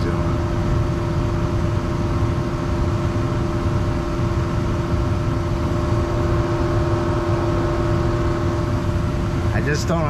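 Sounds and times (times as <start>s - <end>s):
gas furnace humming: 0.0s - 10.0s
low rumble: 5.0s - 9.8s.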